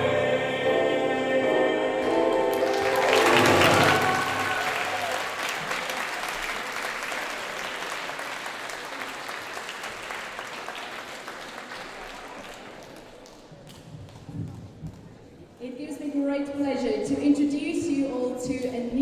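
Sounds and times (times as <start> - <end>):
audience applauding: 2.3 - 13.5.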